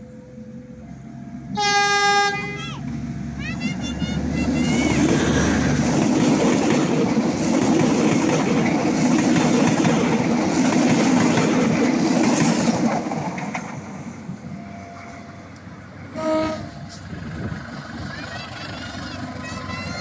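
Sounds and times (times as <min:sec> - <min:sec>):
locomotive engine hum: 0:00.0 - 0:20.0
train passing at speed: 0:00.0 - 0:20.0
train horn: 0:00.9 - 0:02.8, 0:14.6 - 0:17.0
wheels clicking over rail joints: 0:02.4 - 0:14.4, 0:15.4 - 0:20.0.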